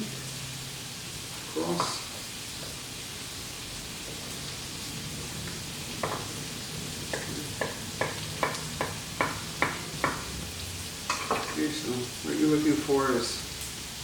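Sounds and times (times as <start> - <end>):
onion sizzling in oil: 0.0 - 14.0
knife chopping on cutting board: 7.1 - 10.3.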